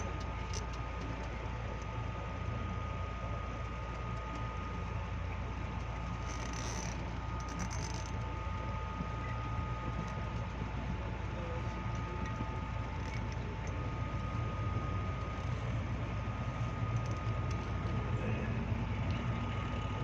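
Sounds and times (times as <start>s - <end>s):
train carriage rumble: 9.0s - 20.0s.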